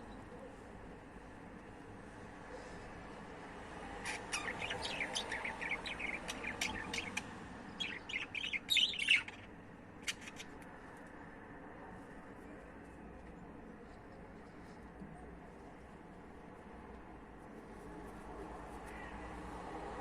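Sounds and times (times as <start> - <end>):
budgerigar chirping: 4.0 - 7.2, 7.8 - 10.5.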